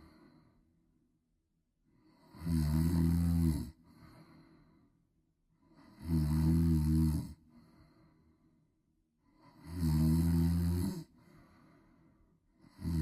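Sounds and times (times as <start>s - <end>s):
soft breath: 0.0s - 1.0s, 3.8s - 6.0s, 7.4s - 9.6s, 11.1s - 12.8s
person snoring loudly: 2.2s - 3.8s, 5.9s - 7.4s, 9.5s - 11.1s, 12.7s - 13.0s.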